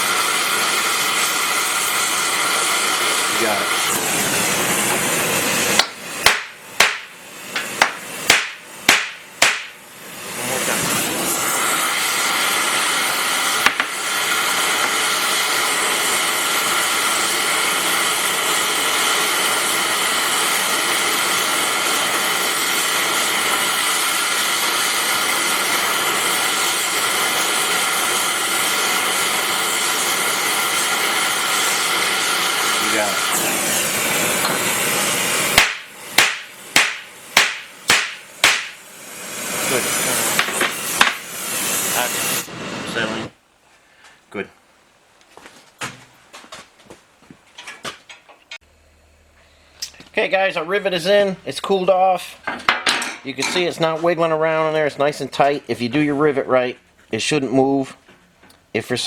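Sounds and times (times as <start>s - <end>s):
power hammer hammering rivet: 5.8s - 9.8s, 13.5s - 14.2s, 35.4s - 38.8s, 40.4s - 41.3s.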